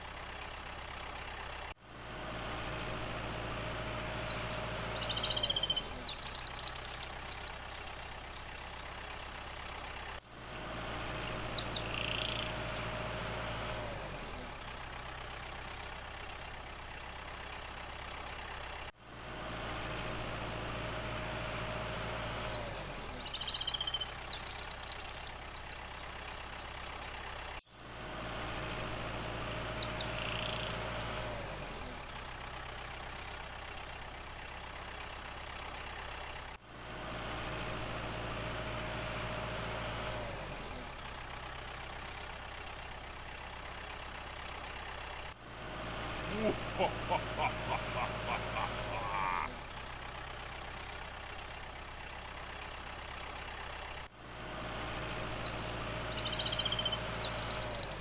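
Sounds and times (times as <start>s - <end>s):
bird chirps: 4.2s - 12.5s, 23.2s - 30.6s.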